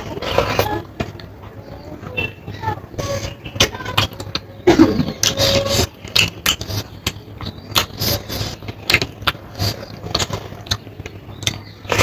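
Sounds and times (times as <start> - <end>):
chewing and mouth noises: 6.0 - 12.0.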